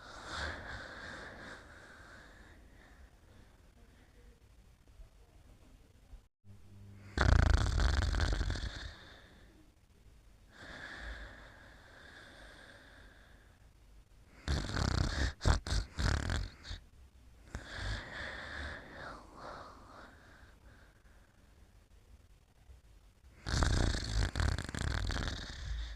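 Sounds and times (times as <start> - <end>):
snoring: 6.9 - 9.5, 14.3 - 16.8, 17.5 - 20.2, 23.4 - 25.9.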